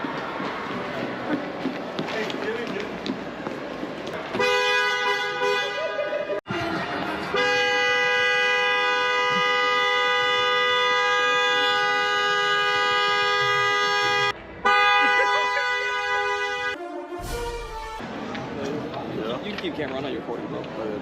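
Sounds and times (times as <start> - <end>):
car horn honking: 4.4 - 5.9, 7.3 - 18.0.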